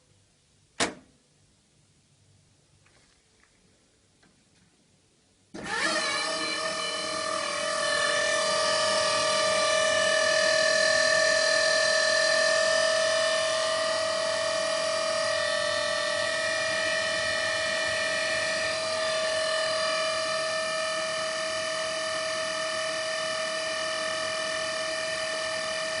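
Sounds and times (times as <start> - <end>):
machine whining: 5.6 - 26.0.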